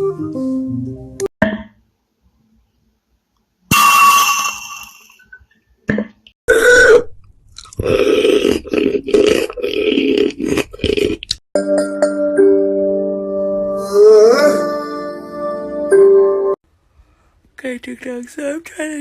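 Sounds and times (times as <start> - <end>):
person's throat and breath sounds: 6.5 - 11.4.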